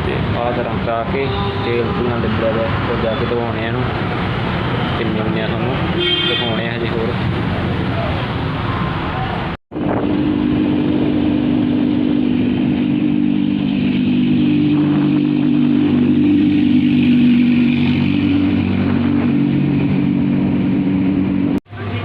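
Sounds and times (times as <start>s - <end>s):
road noise: 0.0s - 22.0s
motorcycle engine running: 9.8s - 21.6s.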